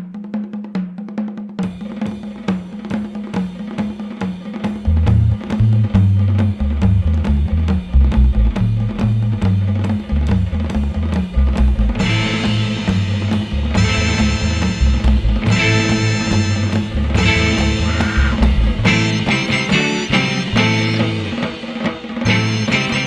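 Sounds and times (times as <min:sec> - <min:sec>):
drum kit beat: 0:01.6 - 0:23.0
low bass notes: 0:04.9 - 0:19.5.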